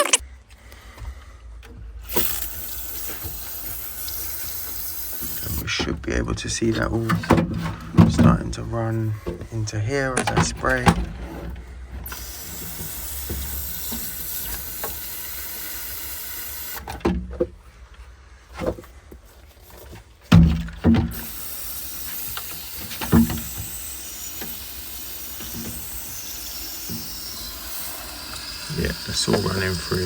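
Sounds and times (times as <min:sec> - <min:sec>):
sprayer hissing: 0:02.0 - 0:05.8, 0:12.0 - 0:16.9, 0:21.1 - 0:30.0
handling knocks and thumps: 0:05.3 - 0:12.1, 0:16.9 - 0:21.4.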